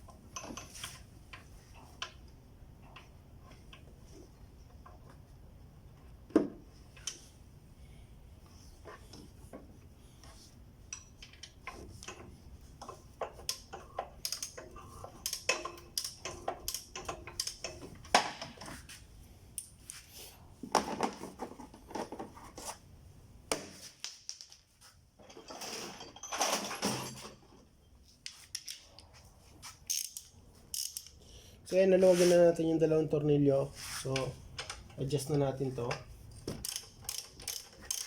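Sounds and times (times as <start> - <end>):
wrench and socket clicking: 15.2 - 17.8, 29.9 - 31.2, 36.6 - 38.0.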